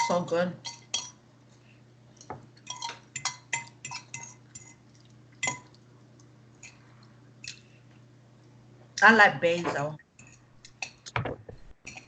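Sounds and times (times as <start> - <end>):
utensil clinking against dish: 2.7 - 4.8.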